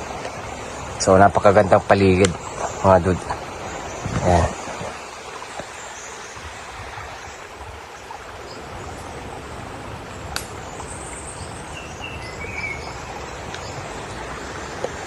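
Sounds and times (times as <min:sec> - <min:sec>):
waterfall rushing: 0:00.0 - 0:15.0
bird chirps: 0:10.5 - 0:14.1.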